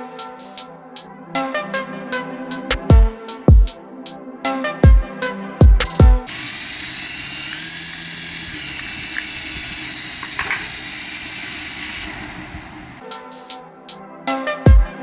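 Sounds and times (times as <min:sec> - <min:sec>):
small electric motor whirring: 0:06.3 - 0:13.0.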